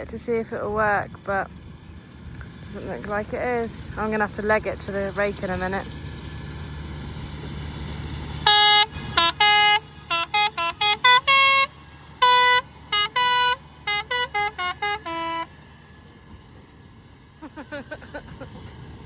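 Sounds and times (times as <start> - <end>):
vehicle engine running: 0.0 - 19.0
horn tooting a tune: 8.4 - 15.6.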